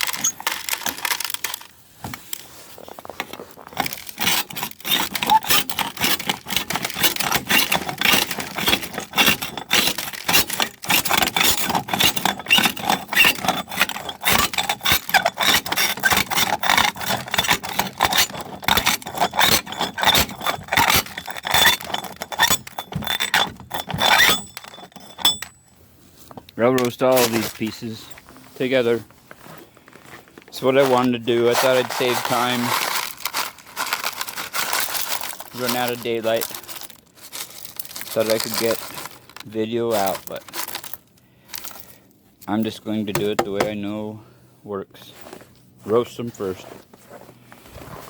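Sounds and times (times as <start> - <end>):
rocks clattering in metal pan: 3.6 - 25.6, 31.5 - 41.0, 43.2 - 43.8.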